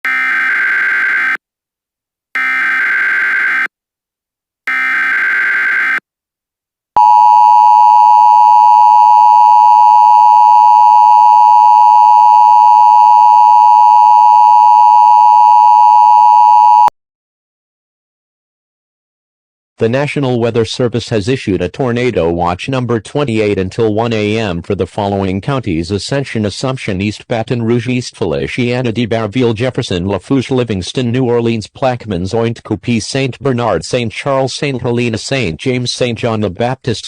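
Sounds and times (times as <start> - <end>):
loud steady alert tone: 7.0 - 16.9.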